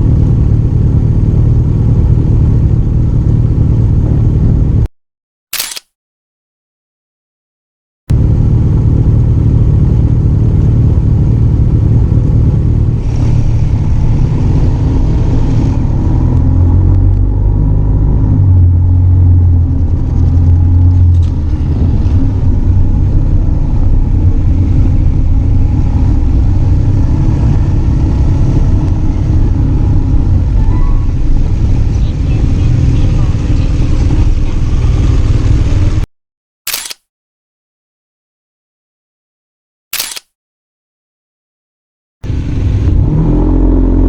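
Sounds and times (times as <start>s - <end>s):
motorcycle engine running: 0.0s - 4.9s, 8.1s - 36.0s, 42.2s - 44.0s.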